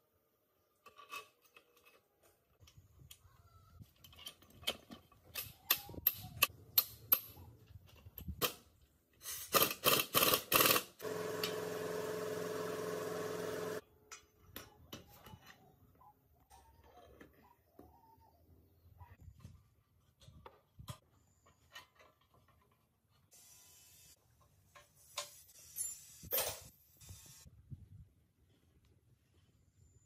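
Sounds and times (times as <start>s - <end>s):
machine hum: 11.0s - 13.8s.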